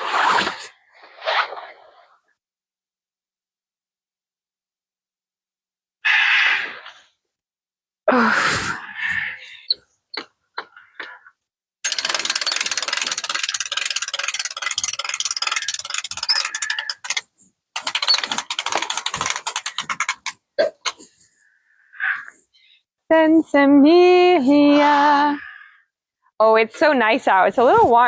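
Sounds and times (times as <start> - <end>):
crank ratcheting clicks: 11.8 - 20.4.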